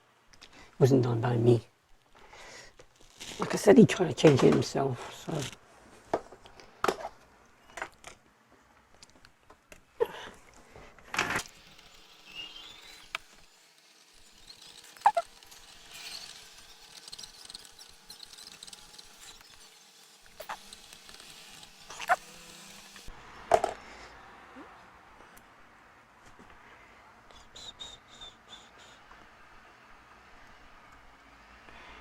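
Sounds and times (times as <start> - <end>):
small tools clicking and tapping: 11.2 - 23.8
tool scratching circuit board: 11.3 - 23.1.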